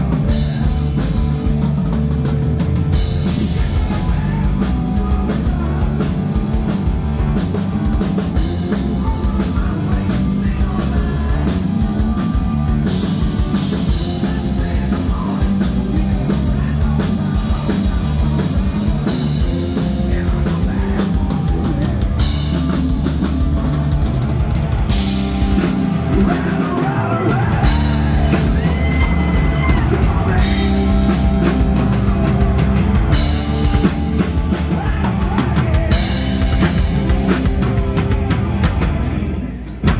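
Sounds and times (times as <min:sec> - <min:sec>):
live rock band playing: 0:00.0 - 0:39.9.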